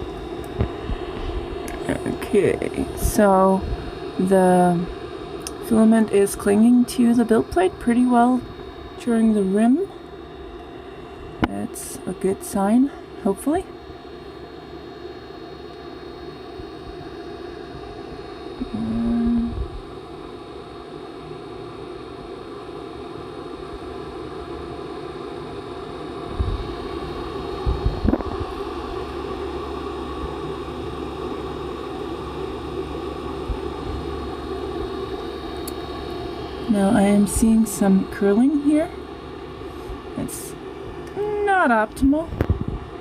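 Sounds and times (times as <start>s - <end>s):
printer motors and fan whirring: 0.0s - 43.0s.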